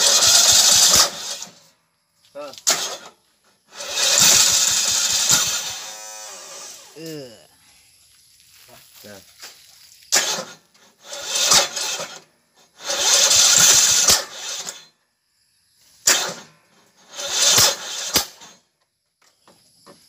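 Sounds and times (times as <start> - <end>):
lawn mower engine cranking: 0.0 - 1.7, 2.5 - 7.2, 9.5 - 14.9, 16.0 - 18.7.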